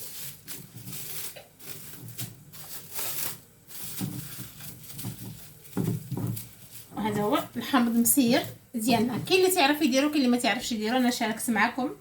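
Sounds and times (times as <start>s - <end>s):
scratchy rustling: 0.0s - 9.6s.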